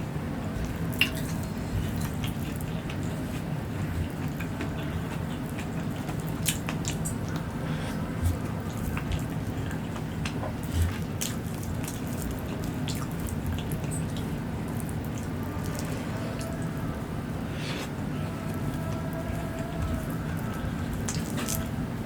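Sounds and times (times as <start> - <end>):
chewing clicks and smacks: 0.6 - 7.6, 8.2 - 16.7, 18.7 - 21.7.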